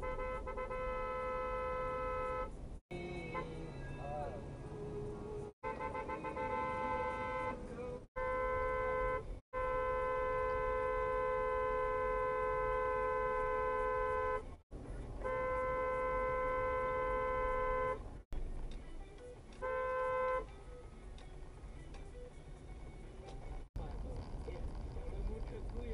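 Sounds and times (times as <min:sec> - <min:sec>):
two-tone vehicle horn blasts: 0:00.0 - 0:02.6, 0:03.2 - 0:03.8, 0:05.6 - 0:14.6, 0:15.2 - 0:18.1, 0:19.6 - 0:20.5
low traffic rumble: 0:00.0 - 0:25.9.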